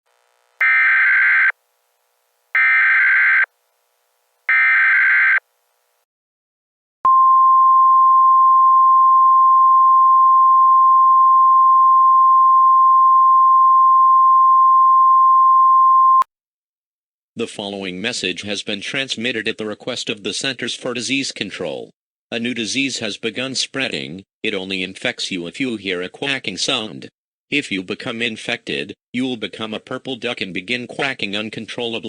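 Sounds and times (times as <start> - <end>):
buzzy digital data tones: 0.1 - 1.5
steady attention tone: 0.1 - 1.7, 2.6 - 3.5, 4.5 - 5.4.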